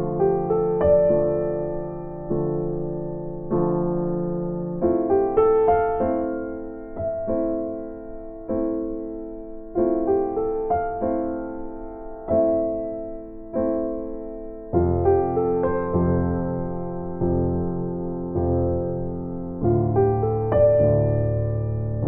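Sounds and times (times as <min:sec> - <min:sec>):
slow piano chords: 0:00.0 - 0:22.0.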